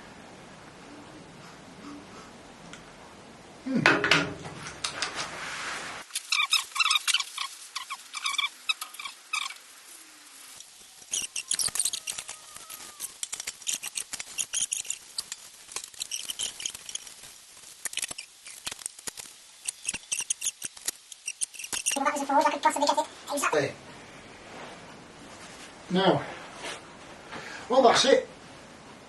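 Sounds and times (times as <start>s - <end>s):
paper rubbing on metal table: 10.8s - 18.7s.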